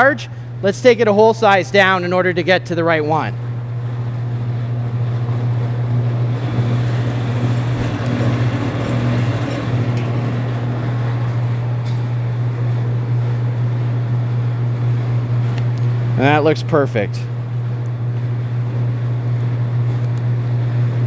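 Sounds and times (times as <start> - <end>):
wire stripping machine humming: 0.0 - 21.0
blade scraping cable insulation: 5.0 - 12.2.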